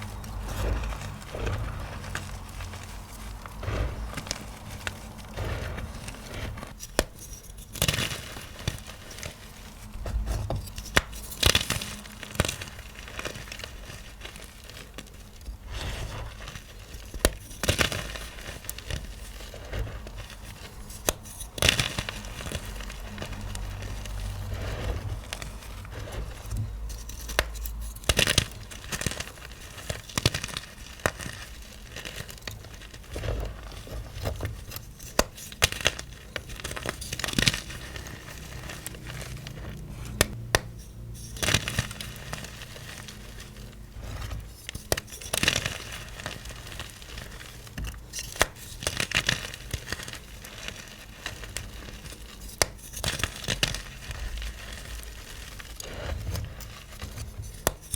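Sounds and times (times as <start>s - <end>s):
chalk blocks crunching and crumbling: 0.0s - 57.9s.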